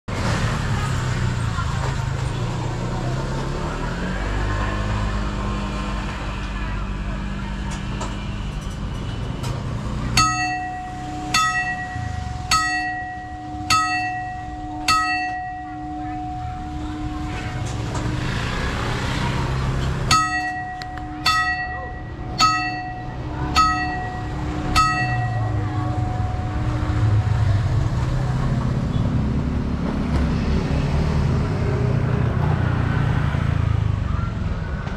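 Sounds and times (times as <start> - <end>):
road traffic rumble: 0.0 - 34.9
vehicle passing: 0.1 - 34.9
level crossing warning bell: 9.6 - 29.3.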